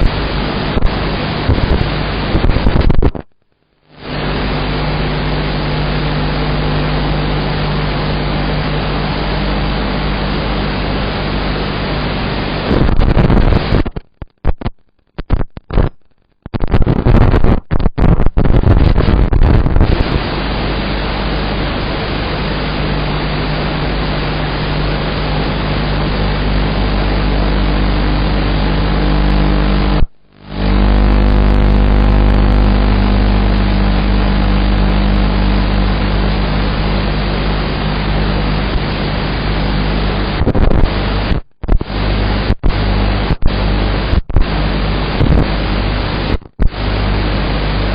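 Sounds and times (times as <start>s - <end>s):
harsh static noise: 0.0s - 47.9s
low hum: 18.6s - 47.9s.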